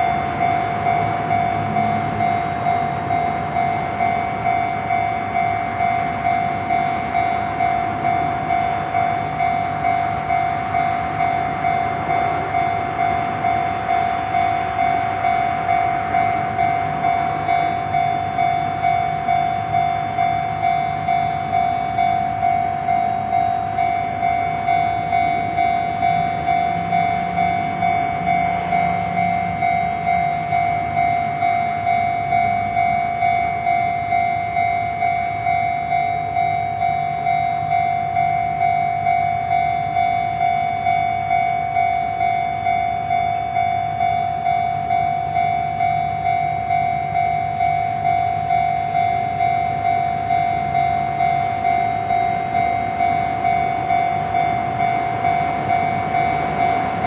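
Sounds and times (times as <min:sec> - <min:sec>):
level-crossing warning alarm: 0:00.0 - 0:57.0.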